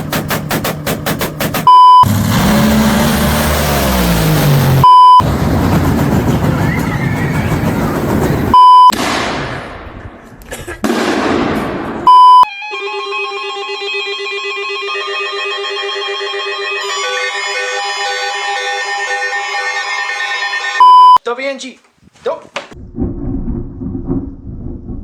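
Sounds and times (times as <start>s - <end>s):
loud steady beep: 1.7s - 2.1s, 4.8s - 5.2s, 8.5s - 8.9s, 12.1s - 12.5s, 20.8s - 21.2s
noisy rumbling audio: 2.2s - 10.8s, 22.8s - 25.0s
falling pitched tone: 12.1s - 21.2s.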